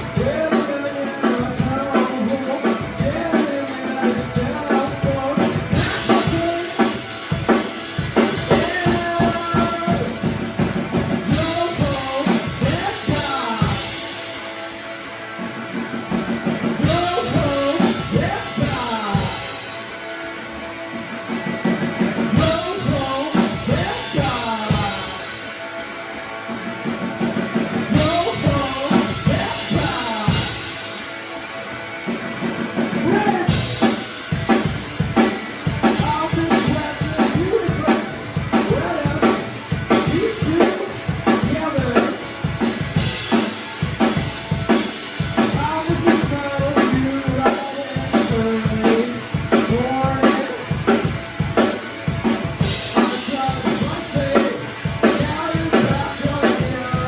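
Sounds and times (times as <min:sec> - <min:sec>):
person singing: 0:00.0 - 0:07.6, 0:08.2 - 0:10.3, 0:11.3 - 0:14.2, 0:16.8 - 0:19.8, 0:22.3 - 0:25.5, 0:27.9 - 0:31.0, 0:32.9 - 0:34.6, 0:35.2 - 0:42.3, 0:44.9 - 0:52.0, 0:52.6 - 0:57.0
drum kit: 0:00.0 - 0:57.0
guitar: 0:00.0 - 0:57.0.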